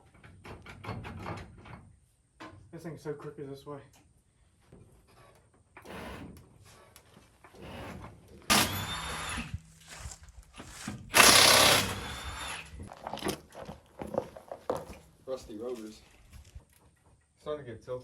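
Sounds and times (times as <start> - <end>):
handheld power tool running: 8.5 - 12.9.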